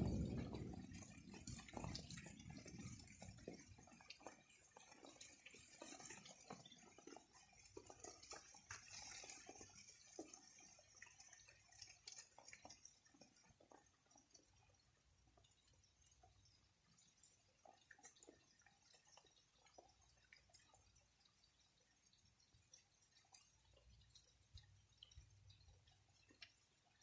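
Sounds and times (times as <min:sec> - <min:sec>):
low rumble: 0:00.0 - 0:01.6
rainwater dripping: 0:00.0 - 0:27.0.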